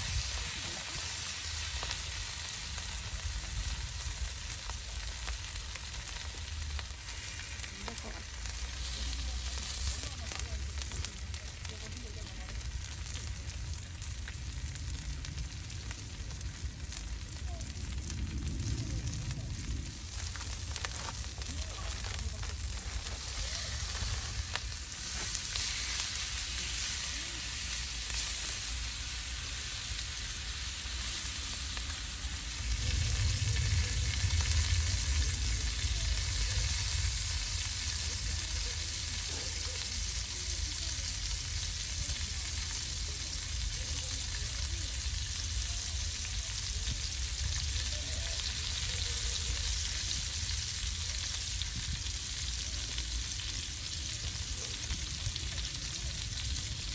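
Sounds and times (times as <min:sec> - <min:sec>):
low rumble: 0:00.0 - 0:43.8
meat sizzling on a grill: 0:00.0 - 0:56.9.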